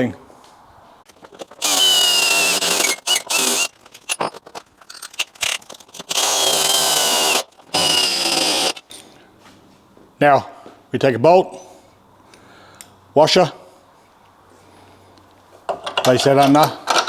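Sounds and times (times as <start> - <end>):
power drill drilling metal: 1.6 - 4.3, 5.4 - 8.8.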